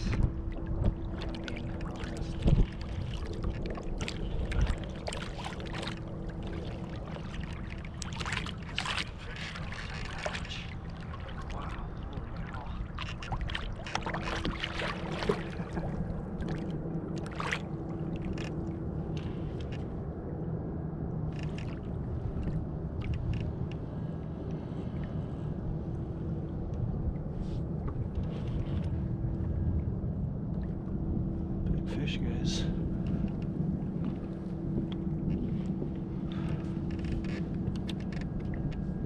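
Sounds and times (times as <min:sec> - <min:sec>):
water splashing against kayak: 0:00.0 - 0:19.8
faint steady hum: 0:00.0 - 0:39.0
steady low rumble: 0:00.0 - 0:39.0.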